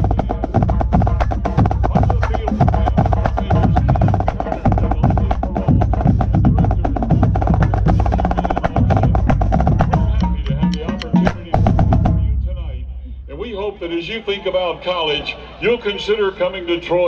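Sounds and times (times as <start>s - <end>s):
marching snare drums: 0.0s - 13.7s
bass drums: 0.0s - 13.9s.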